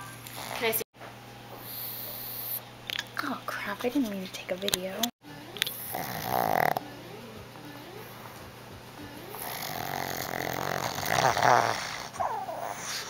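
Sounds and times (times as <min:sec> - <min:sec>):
dog snoring: 0:00.2 - 0:00.8, 0:01.6 - 0:02.6, 0:05.7 - 0:06.9, 0:09.2 - 0:13.0
dog snorting: 0:05.7 - 0:06.8, 0:09.3 - 0:13.0.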